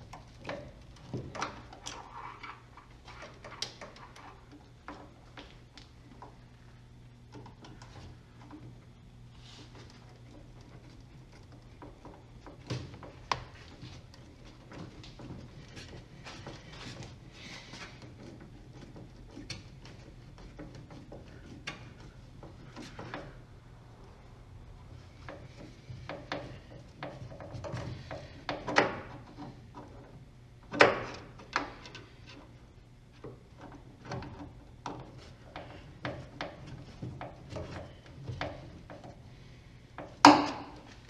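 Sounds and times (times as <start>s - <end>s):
knocks and clicks of tools: 40.0s - 41.0s.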